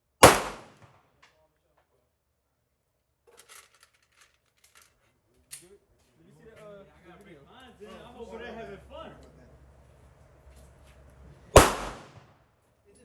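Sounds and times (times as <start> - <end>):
pistol shot: 0.2 - 1.0, 11.6 - 12.3.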